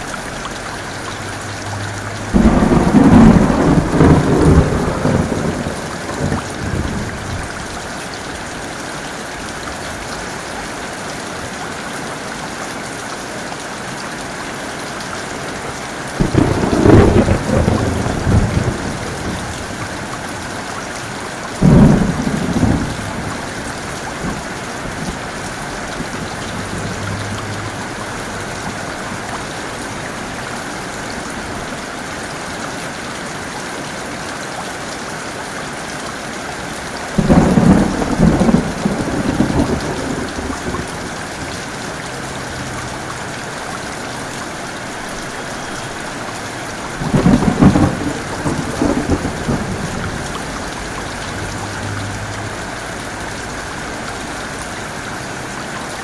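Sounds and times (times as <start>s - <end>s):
heavy rain pouring: 0.0s - 56.0s
thunderclaps rumbling: 0.3s - 7.9s, 16.2s - 31.7s, 37.2s - 43.3s, 45.1s - 55.7s.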